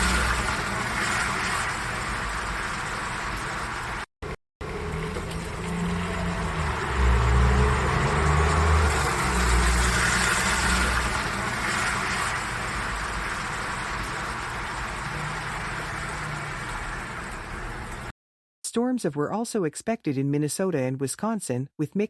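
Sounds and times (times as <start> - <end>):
vehicle engine rumble: 4.6 - 11.7.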